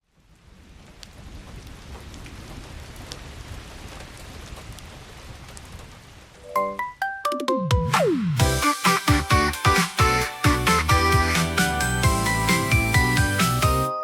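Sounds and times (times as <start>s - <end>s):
steady rain falling: 0.0s - 6.8s, 8.4s - 13.9s
raindrops ticking: 0.2s - 7.5s.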